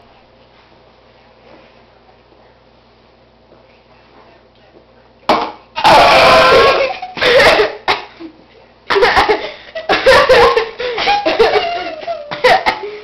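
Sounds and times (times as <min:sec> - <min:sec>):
cough-like burst: 0:05.3 - 0:08.2, 0:12.3 - 0:13.0
person laughing and giggling: 0:09.0 - 0:13.0.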